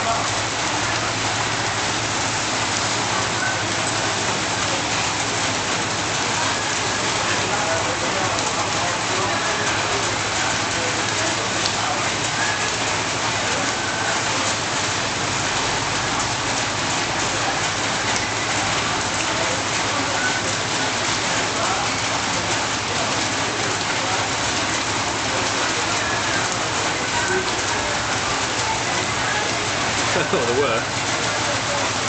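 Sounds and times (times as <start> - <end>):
heavy rain pouring: 0.0 - 32.0
raindrops pattering: 0.0 - 32.0.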